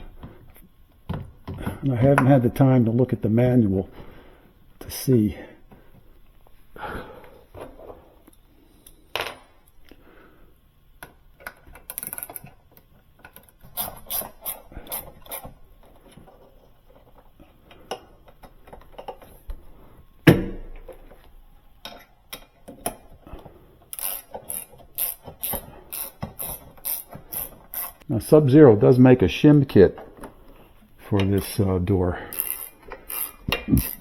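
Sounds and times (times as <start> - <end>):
ratchet wrench clicking: 13.7 - 15.5, 23.9 - 28.0, 32.3 - 34.0
tools and metal hardware clinking: 32.3 - 34.0.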